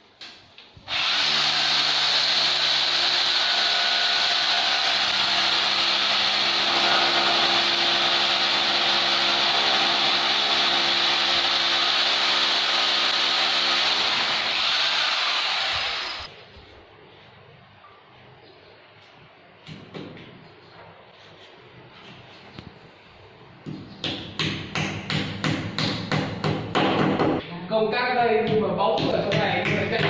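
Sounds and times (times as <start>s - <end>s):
electric power tool running: 0.9s - 16.3s.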